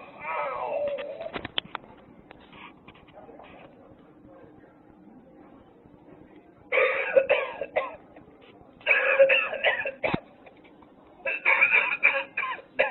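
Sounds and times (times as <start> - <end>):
raspy coughing sound: 6.7 - 8.0, 8.8 - 10.3, 11.3 - 12.9.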